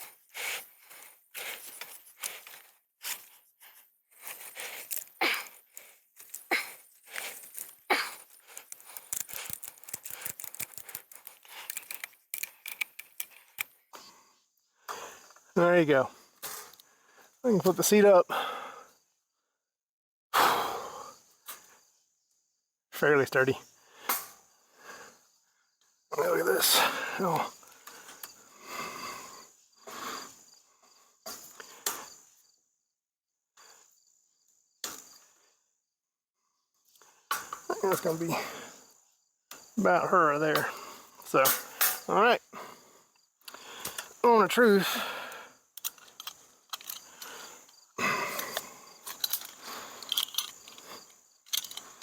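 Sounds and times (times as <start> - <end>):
ratchet strap clicking: 0.0 - 3.4, 4.2 - 13.8, 45.8 - 47.7, 48.3 - 52.0
heavy laboured breathing: 0.0 - 14.1, 40.6 - 52.0
metal rattling: 4.2 - 13.7.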